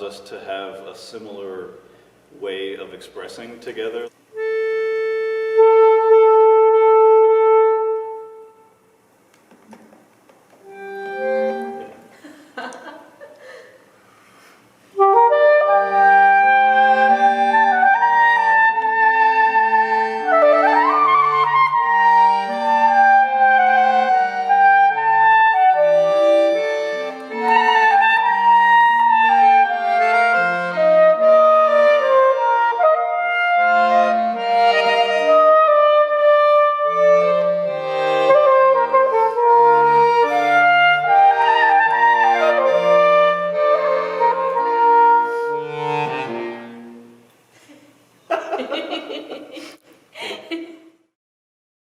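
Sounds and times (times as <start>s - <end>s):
accordion chords: 0.0s - 9.1s, 10.6s - 47.3s
soprano saxophone melody: 4.3s - 8.9s, 10.6s - 12.1s, 14.9s - 47.2s.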